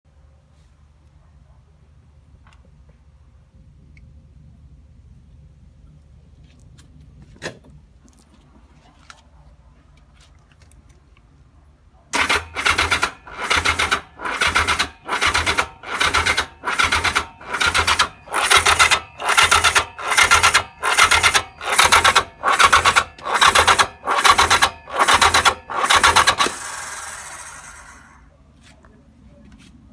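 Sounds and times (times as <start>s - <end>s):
motorcycle electric starter cranking: 12.2s - 28.3s.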